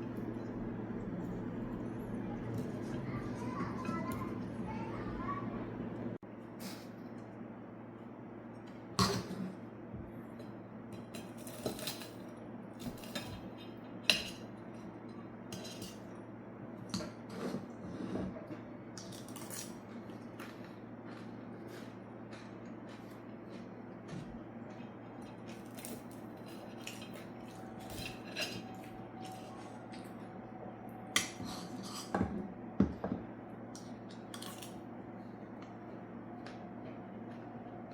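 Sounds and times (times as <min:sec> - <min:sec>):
steady low hum: 0:00.0 - 0:37.9
utensils clinking against dishes: 0:10.3 - 0:16.2, 0:25.2 - 0:30.0.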